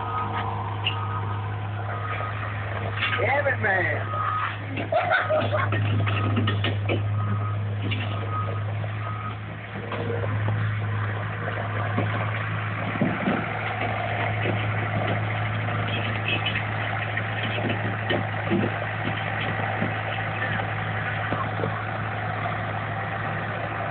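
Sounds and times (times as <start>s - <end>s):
skid steer engine running: 0.0s - 23.9s
metal knocks and clanks: 4.7s - 7.2s, 11.7s - 21.8s.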